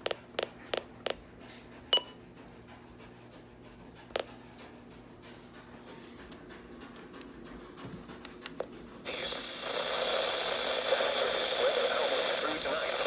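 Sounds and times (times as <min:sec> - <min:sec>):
low radio hum: 0:09.0 - 0:13.0
loud static hiss: 0:09.1 - 0:13.0
steady high whine: 0:09.1 - 0:13.0.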